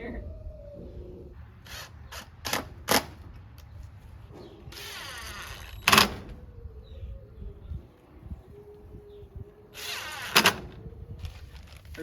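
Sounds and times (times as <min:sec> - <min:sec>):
door scraping on hinges: 0:04.2 - 0:06.4, 0:09.8 - 0:11.9
door banging: 0:04.2 - 0:06.5, 0:09.8 - 0:10.8.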